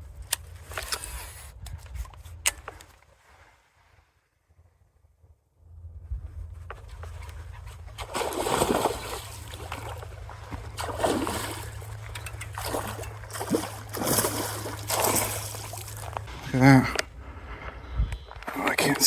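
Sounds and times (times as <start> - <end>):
steady low rumble: 4.4 - 19.0
fish splashing in water: 7.8 - 16.3.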